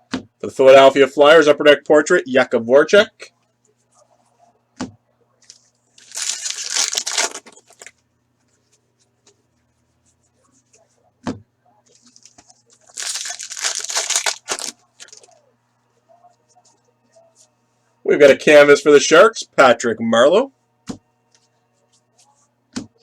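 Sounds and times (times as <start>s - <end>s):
foil wrappers tearing and crinkling: 5.5s - 7.9s, 12.1s - 15.3s.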